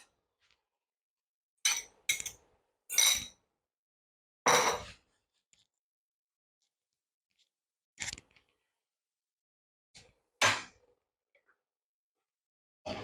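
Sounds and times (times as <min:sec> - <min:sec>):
utensils clinking on cookware: 0:01.7 - 0:03.4.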